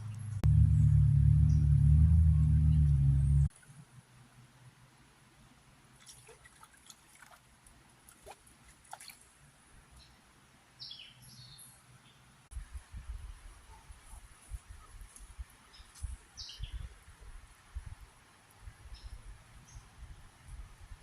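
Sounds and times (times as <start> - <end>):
light water drips: 5.8 - 10.2.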